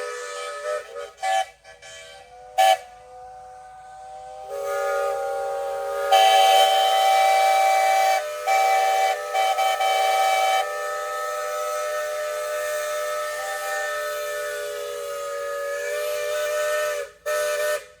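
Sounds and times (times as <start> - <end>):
steam whistles blowing: 0.0 - 18.0.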